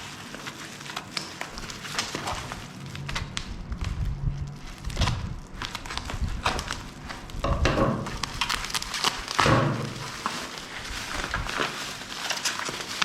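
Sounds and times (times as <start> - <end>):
packaging rustling and scraping: 0.0 - 13.0.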